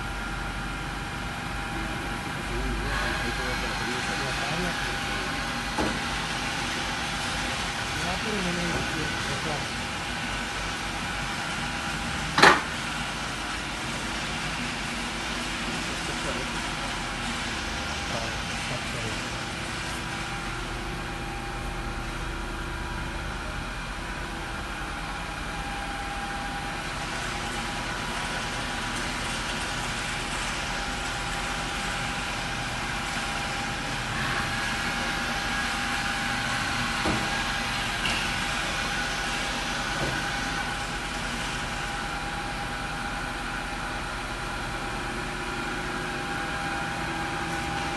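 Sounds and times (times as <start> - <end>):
machine hum with high whine: 0.0 - 47.9.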